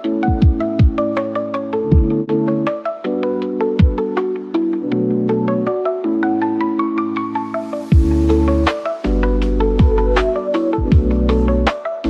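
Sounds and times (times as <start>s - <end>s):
electronic music: 0.0s - 12.0s
deep bass notes: 8.0s - 11.7s.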